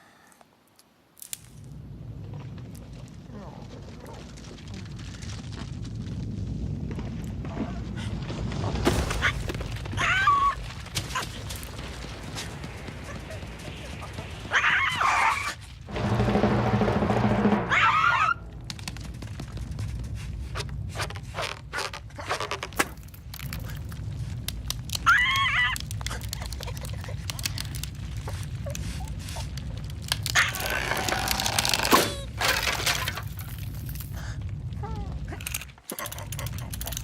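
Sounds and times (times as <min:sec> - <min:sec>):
rushing noise: 0:11.8 - 0:20.9
small clicks: 0:35.3 - 0:37.0.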